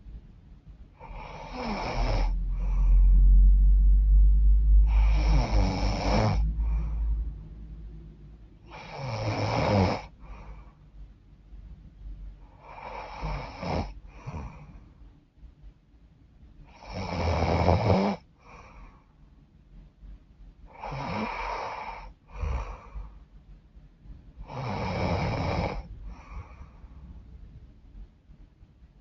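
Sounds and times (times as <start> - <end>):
woman snoring: 1.0 - 3.1, 4.8 - 6.9, 8.7 - 10.2, 12.6 - 14.6, 16.7 - 18.2, 20.7 - 22.8, 24.4 - 25.9
quiet breath out: 18.4 - 19.2, 21.4 - 23.3, 26.0 - 27.2.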